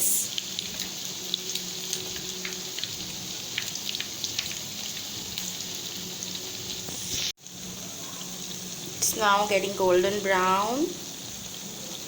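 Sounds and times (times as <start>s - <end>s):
oil popping and crackling: 0.0s - 7.4s
bread sizzling in hot oil: 0.0s - 12.0s.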